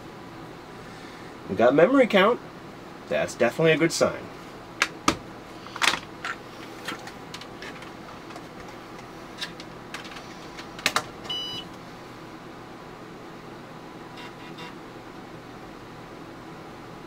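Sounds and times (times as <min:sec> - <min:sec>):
machine hum: 0:00.0 - 0:17.0.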